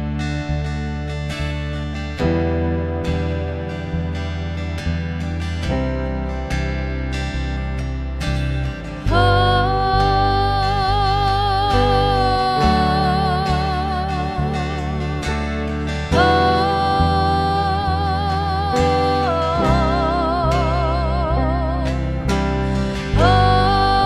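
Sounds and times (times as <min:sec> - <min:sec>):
bass notes: 0:00.0 - 0:24.0
strummed acoustic guitar: 0:00.0 - 0:24.0.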